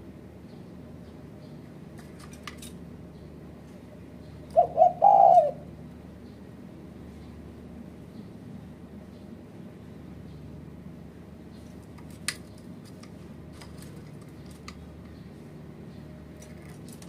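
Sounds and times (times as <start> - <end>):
dove cooing: 4.5 - 5.8.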